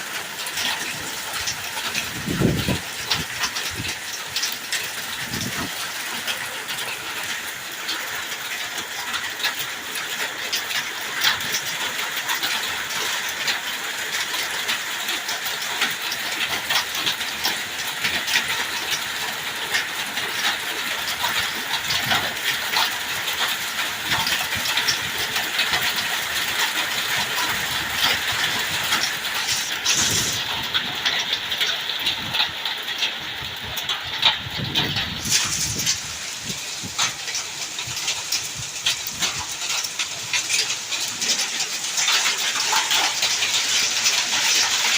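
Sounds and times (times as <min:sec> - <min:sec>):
hail and heavy rain pelting: 0:00.0 - 0:44.9.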